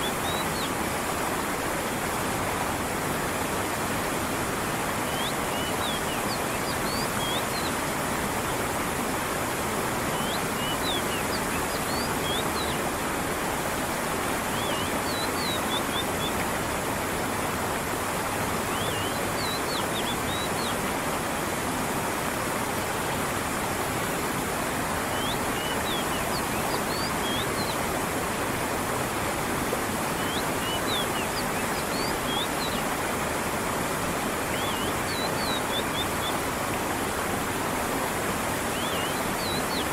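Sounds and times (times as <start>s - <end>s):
stream water rushing: 0.0s - 39.9s
small birds chirping: 10.2s - 12.8s, 14.5s - 16.3s, 25.1s - 27.8s, 30.2s - 33.0s, 34.5s - 36.4s, 38.7s - 39.9s.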